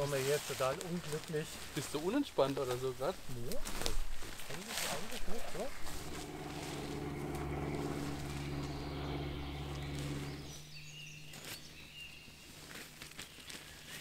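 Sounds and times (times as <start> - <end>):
low engine drone: 5.5 - 11.9.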